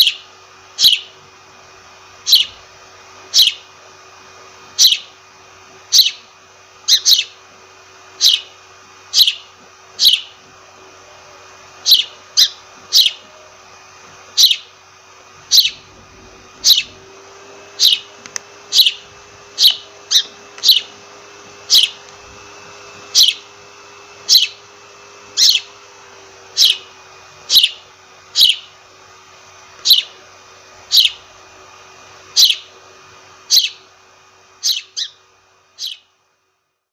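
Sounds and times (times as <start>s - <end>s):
sparrow chirping: 0.0s - 0.2s, 0.8s - 1.1s, 2.2s - 2.6s, 3.3s - 3.7s, 4.8s - 5.1s, 5.9s - 7.4s, 8.2s - 10.4s, 11.8s - 13.2s, 14.3s - 14.7s, 15.5s - 17.0s, 17.7s - 21.0s, 21.6s - 22.0s, 23.1s - 23.5s, 24.2s - 24.6s, 25.3s - 25.8s, 26.5s - 28.7s, 29.8s - 30.2s, 30.8s - 31.3s, 32.3s - 32.7s, 33.5s - 33.9s, 34.6s - 35.2s, 35.8s - 36.1s
faint steady hum: 0.0s - 36.9s.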